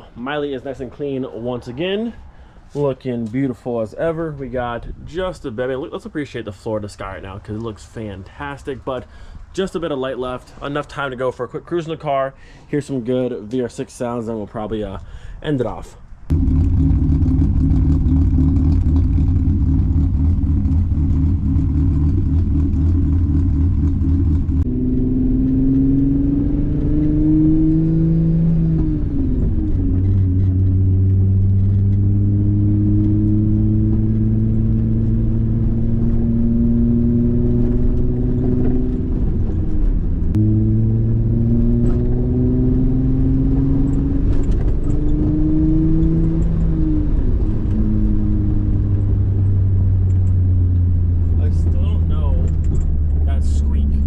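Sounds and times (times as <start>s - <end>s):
car engine revving and upshifting: 16.4s - 54.0s.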